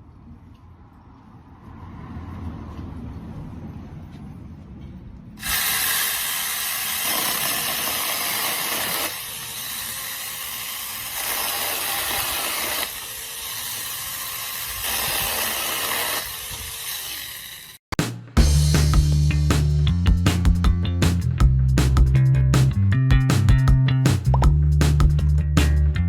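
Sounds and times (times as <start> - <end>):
mini chainsaw chain hissing: 5.4 - 17.8.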